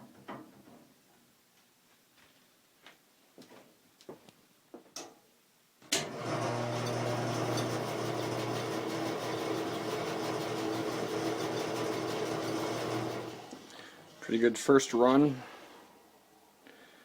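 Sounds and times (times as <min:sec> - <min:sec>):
bandsaw motor humming: 0:06.0 - 0:13.7.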